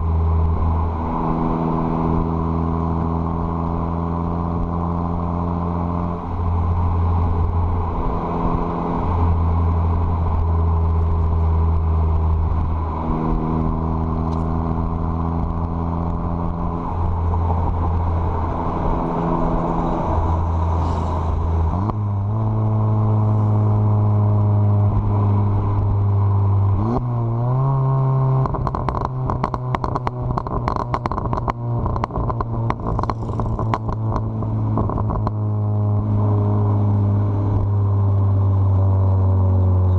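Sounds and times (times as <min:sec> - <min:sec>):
car engine revving: 0:00.0 - 0:39.9
exhaust crackles and pops: 0:09.6 - 0:23.1, 0:24.8 - 0:36.1.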